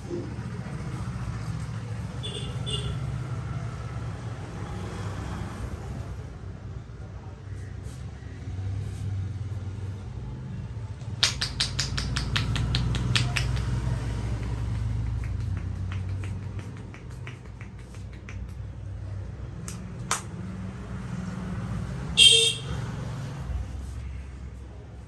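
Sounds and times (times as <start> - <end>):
hands slapping a head: 11.0 - 20.4.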